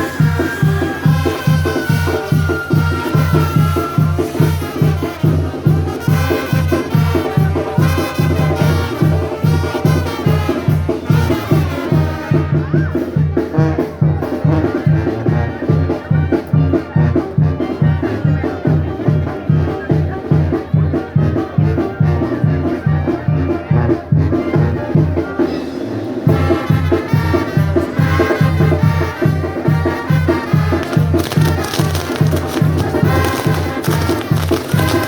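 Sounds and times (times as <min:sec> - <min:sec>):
latin dance music with brass: 0:00.0 - 0:12.4.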